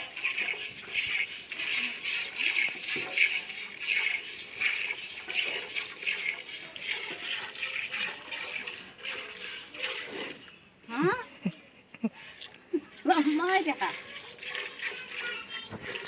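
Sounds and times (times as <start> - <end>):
milk squirting into a pail: 0.0 - 10.6, 12.2 - 16.0.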